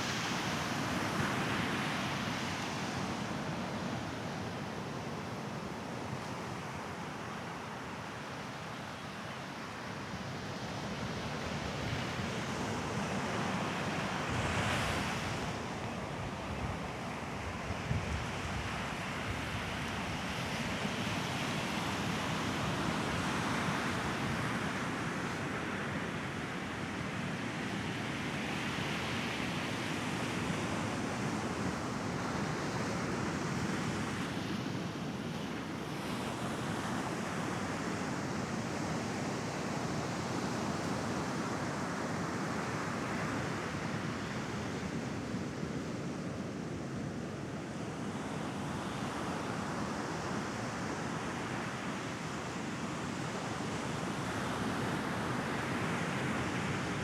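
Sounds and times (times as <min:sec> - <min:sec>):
waves breaking on sandy beach: 0:00.0 - 0:57.0.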